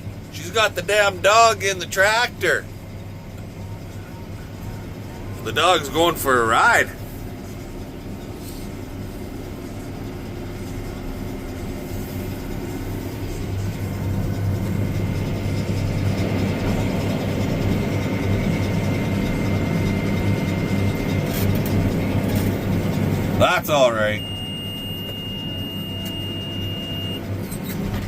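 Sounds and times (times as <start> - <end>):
tractor engine running: 0.0 - 28.0.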